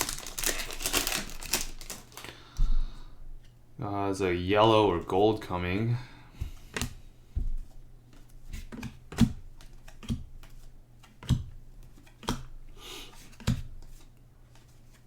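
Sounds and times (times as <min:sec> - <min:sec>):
cards clicking and tapping: 0:06.4 - 0:12.6.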